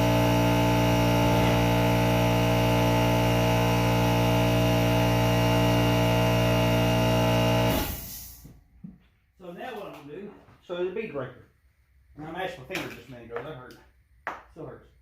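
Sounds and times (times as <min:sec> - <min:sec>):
air compressor motor humming: 0:00.0 - 0:08.5.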